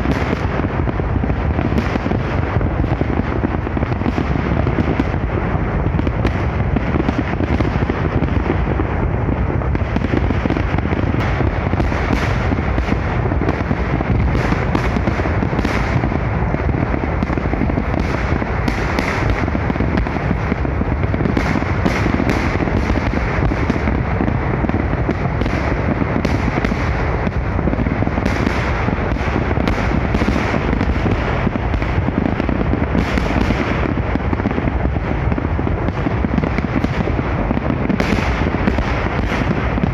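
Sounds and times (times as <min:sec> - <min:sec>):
rapid fireworks bangs: 0:00.0 - 0:39.9
sharp fireworks cracks: 0:00.0 - 0:39.9.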